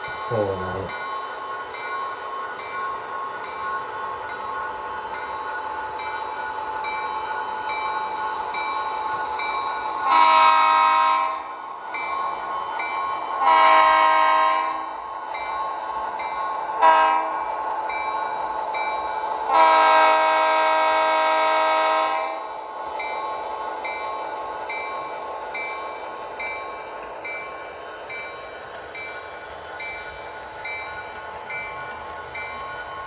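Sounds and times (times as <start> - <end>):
train horn through small speaker: 10.1 - 11.5, 13.4 - 14.9, 16.8 - 17.4, 19.5 - 22.4.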